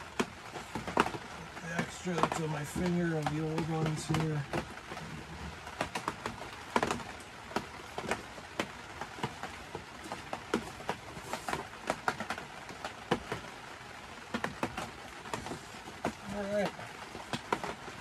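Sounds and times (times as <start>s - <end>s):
faint steady hiss: 0.0s - 18.0s.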